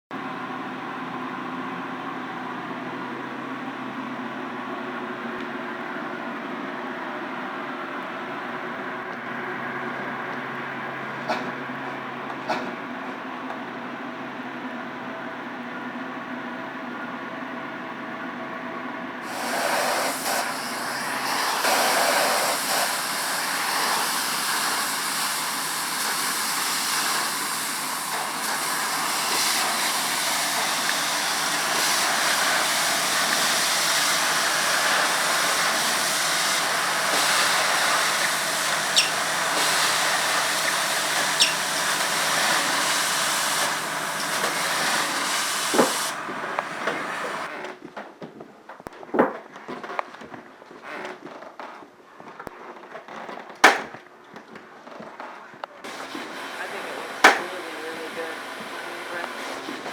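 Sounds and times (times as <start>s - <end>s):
loud rushing hiss: 19.2s - 47.5s, 55.9s - 59.9s.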